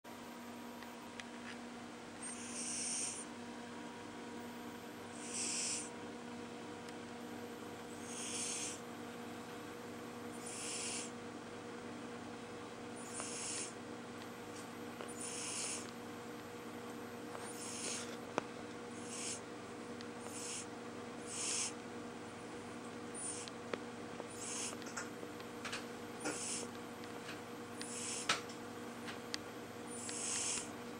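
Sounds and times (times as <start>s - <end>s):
pet snoring: 2.2s - 3.3s, 5.1s - 5.9s, 7.9s - 8.9s, 10.3s - 11.2s, 13.0s - 13.8s, 15.0s - 15.9s, 17.4s - 18.2s, 18.9s - 19.4s, 20.2s - 21.8s, 23.1s - 23.5s, 24.3s - 25.0s, 26.2s - 26.8s, 27.8s - 28.4s, 29.9s - 30.7s.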